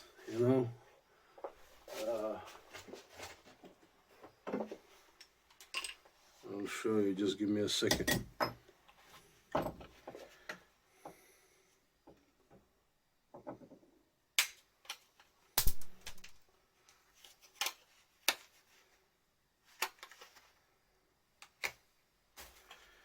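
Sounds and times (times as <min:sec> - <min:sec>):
rustling: 0:01.5 - 0:05.2.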